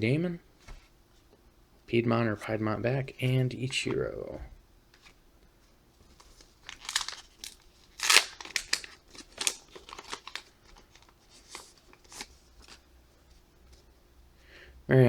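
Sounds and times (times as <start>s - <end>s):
card pack wrapper tearing: 6.6s - 12.3s.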